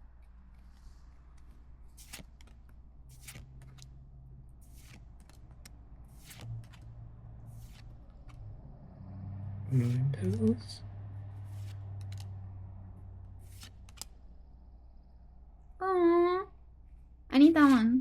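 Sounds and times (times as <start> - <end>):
cards and foil wrappers crinkling: 0.3 - 8.4, 9.7 - 10.8, 11.4 - 12.3, 13.4 - 14.2, 17.6 - 17.9.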